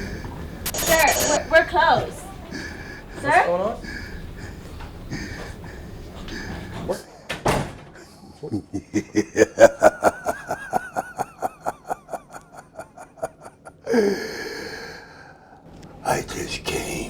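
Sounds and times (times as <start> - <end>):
man cackling: 8.4 - 14.3
drawn-out breathy cry: 10.2 - 15.6.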